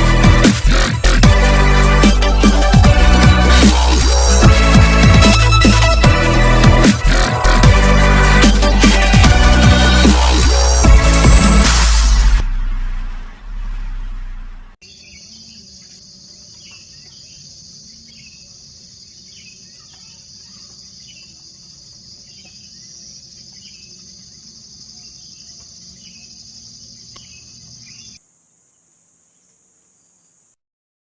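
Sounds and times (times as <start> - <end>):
bird chirping: 14.8 - 29.5
high insect trill: 14.8 - 30.6.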